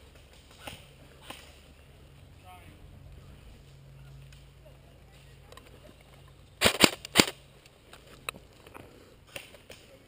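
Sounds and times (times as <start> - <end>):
airsoft gun shots: 6.6 - 7.4.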